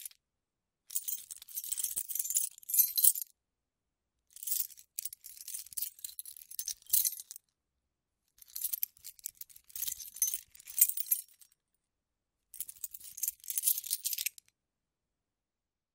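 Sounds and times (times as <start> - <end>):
metal keys jangling: 1.0 - 3.2, 4.4 - 7.4, 8.4 - 11.4, 12.6 - 14.4.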